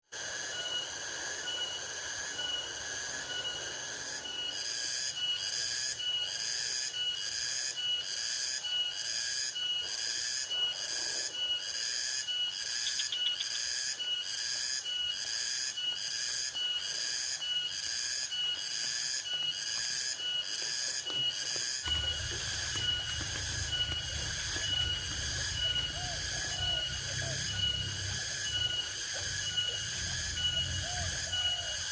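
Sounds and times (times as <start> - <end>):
high-pitched pulsing insect chorus: 0.1 - 31.9
lower insect chirping: 0.2 - 31.9.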